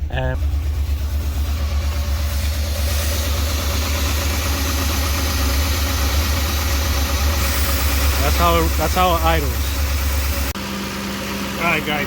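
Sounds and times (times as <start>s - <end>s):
engine idling roughly: 0.0s - 12.0s.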